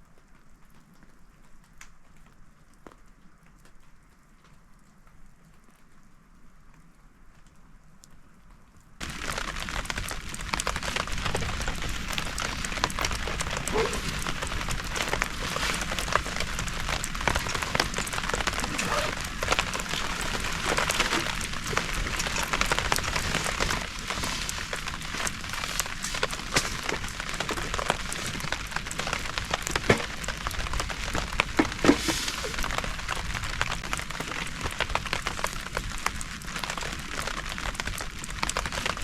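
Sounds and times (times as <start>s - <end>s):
heavy rain falling: 9.0s - 39.0s.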